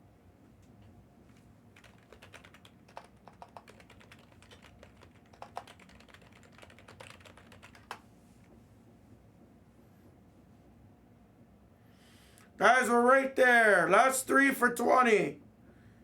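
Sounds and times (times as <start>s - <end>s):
typing on computer keyboard: 1.8s - 8.0s.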